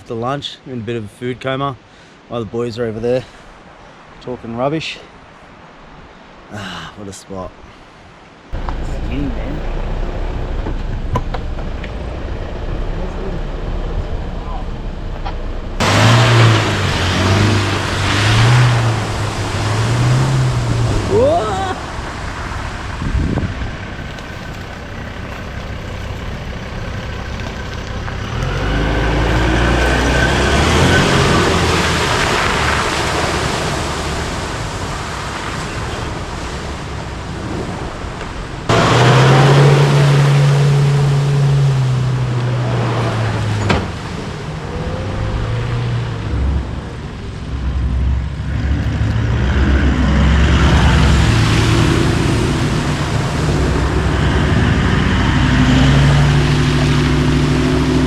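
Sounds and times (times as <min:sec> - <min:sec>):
wind noise: 0:08.5 - 0:39.6
vehicle engines revving: 0:08.6 - 0:37.9, 0:38.6 - 0:58.0
tyre noise: 0:23.2 - 0:33.6.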